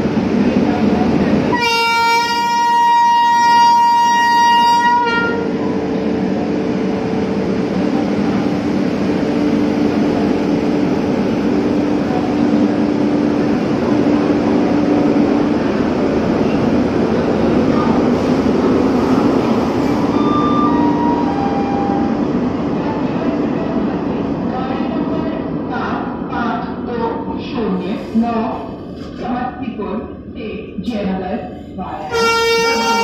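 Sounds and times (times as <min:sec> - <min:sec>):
train running noise: 0:00.0 - 0:33.0
locomotive horn blast: 0:01.5 - 0:05.6, 0:32.1 - 0:33.0.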